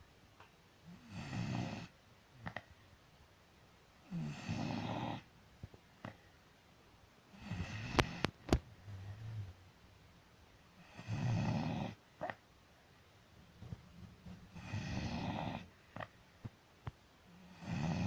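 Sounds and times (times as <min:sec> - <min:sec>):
dog snoring: 0:00.9 - 0:02.6, 0:04.0 - 0:05.3, 0:07.3 - 0:09.6, 0:10.7 - 0:12.4, 0:14.4 - 0:16.1, 0:17.4 - 0:18.0.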